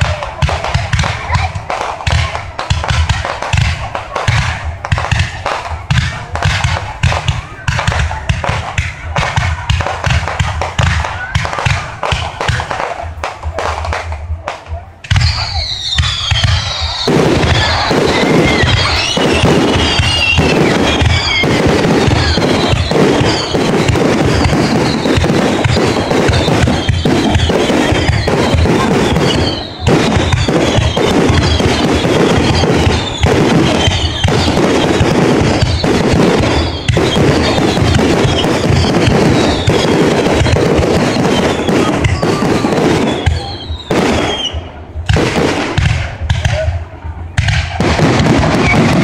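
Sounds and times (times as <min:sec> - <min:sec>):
fireworks bangs and crackle: 0:00.0 - 0:49.0
fireworks whistling: 0:00.0 - 0:49.0.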